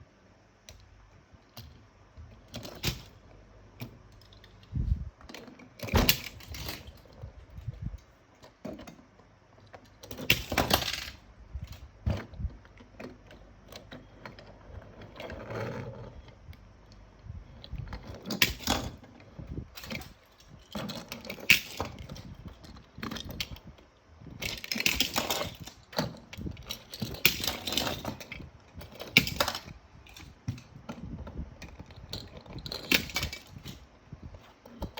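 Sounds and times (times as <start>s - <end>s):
metal toy cars clattering: 2.5s - 3.2s, 5.3s - 7.3s, 9.6s - 16.2s, 17.7s - 19.2s, 19.8s - 23.6s, 24.3s - 33.9s.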